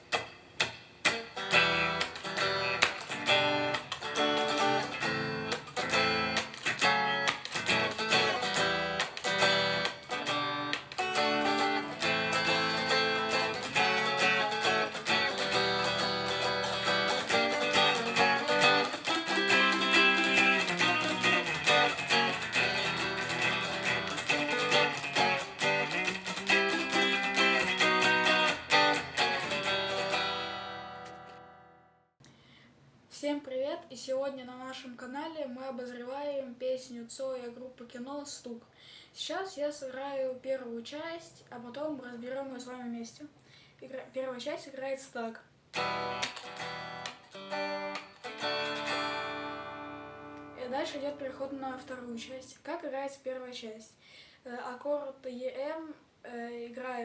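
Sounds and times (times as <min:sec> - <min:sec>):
guitar strumming: 0:00.0 - 0:32.0, 0:45.8 - 0:52.1.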